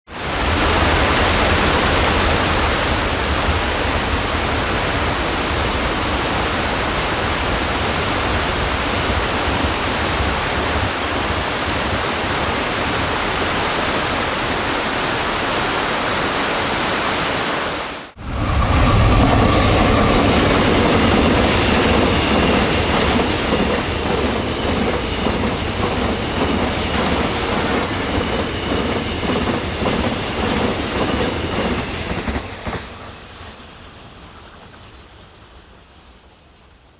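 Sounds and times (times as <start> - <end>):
freight train rumbling past: 0.1 - 15.8, 18.1 - 36.9
water rushing over a weir: 0.1 - 28.0
wheels clacking over rail joints: 19.1 - 33.1.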